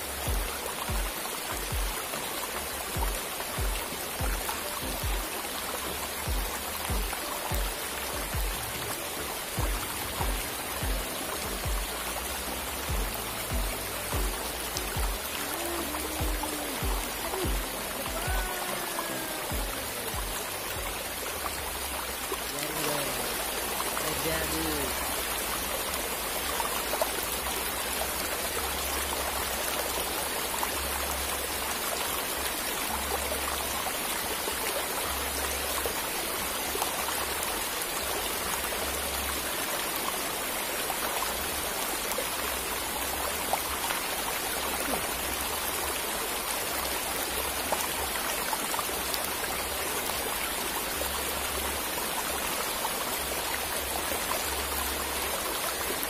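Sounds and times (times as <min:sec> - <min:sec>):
river water rushing: 0:00.0 - 0:56.0.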